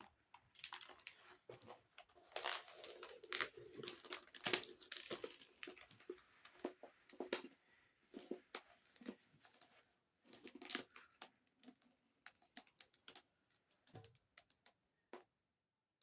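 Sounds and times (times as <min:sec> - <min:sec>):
plastic rustle: 0:00.4 - 0:07.5.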